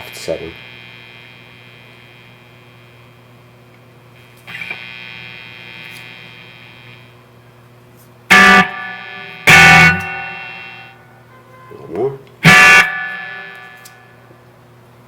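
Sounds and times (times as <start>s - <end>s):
amp hum and buzz: 0.0s - 15.0s
electric guitar chords: 8.3s - 11.1s, 12.4s - 14.3s.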